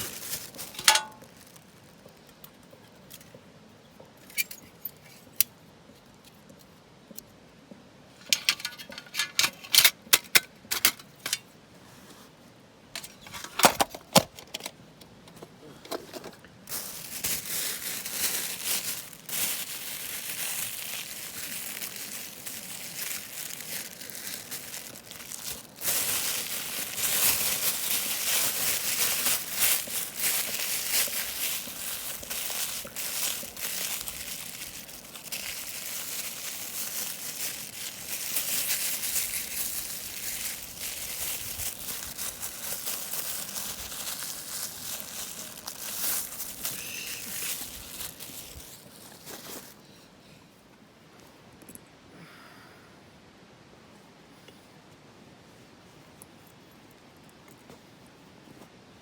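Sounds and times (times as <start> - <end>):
crinkling and rustling: 0.0 - 3.4, 8.2 - 12.3, 13.0 - 50.0.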